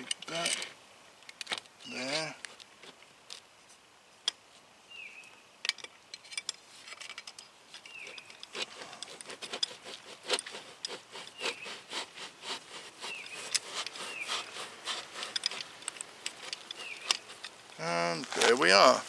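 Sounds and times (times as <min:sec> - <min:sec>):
metal parts clicking and scraping: 0:00.0 - 0:00.7, 0:05.6 - 0:11.6, 0:13.0 - 0:17.8.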